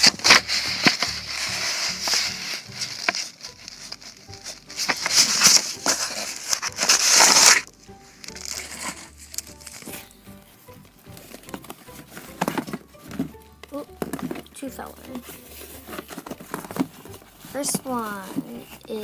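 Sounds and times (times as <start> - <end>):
machine scraping and rustling: 0.0 - 7.7.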